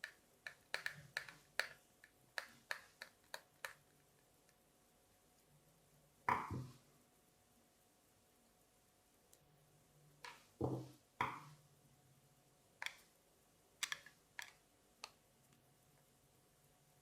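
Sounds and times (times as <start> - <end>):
small parts clicking and tapping: 0.0 - 4.6, 12.8 - 13.1, 13.8 - 15.6.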